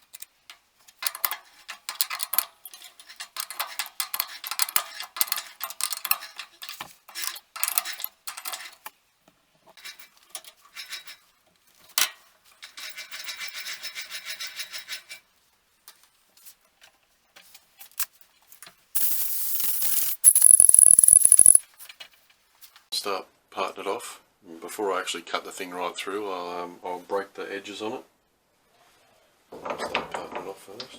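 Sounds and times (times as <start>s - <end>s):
regular ticks: 19.0s - 21.6s
steady hiss with high whistle: 19.0s - 21.6s.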